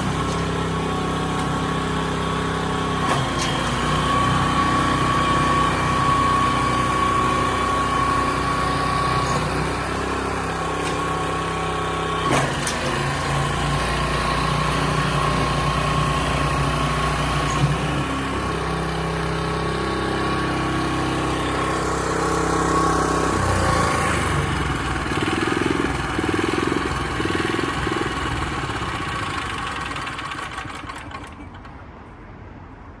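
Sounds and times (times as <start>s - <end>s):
small engine running: 0.0s - 31.8s
thin engine whine: 19.5s - 31.7s.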